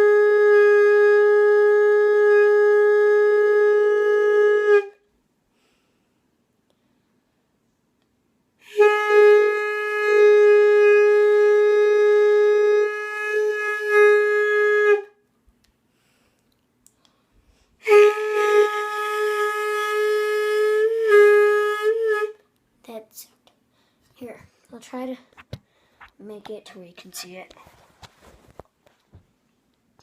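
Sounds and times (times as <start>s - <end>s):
wind instrument long notes: 0.0s - 5.0s, 8.6s - 15.2s, 17.8s - 22.5s.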